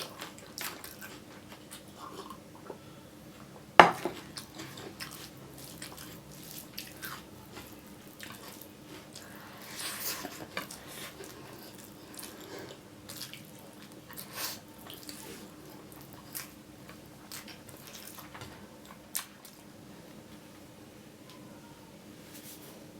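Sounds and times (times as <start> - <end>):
faint steady hum: 0.0 - 22.9
wet chewing clicks and smacks: 10.2 - 19.7.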